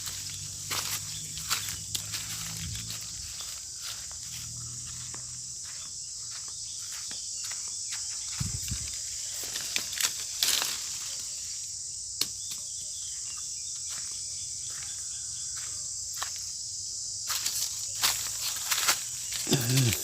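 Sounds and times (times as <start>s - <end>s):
insects chirring: 0.0s - 20.0s.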